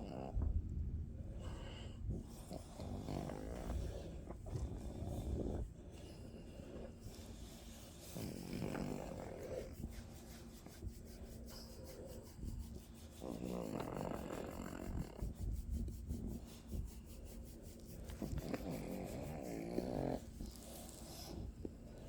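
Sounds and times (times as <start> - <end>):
dog snore-like breathing: 1.2 - 10.1, 11.3 - 15.4, 17.8 - 22.0
dog grunting moans: 2.2 - 7.0, 8.0 - 9.8.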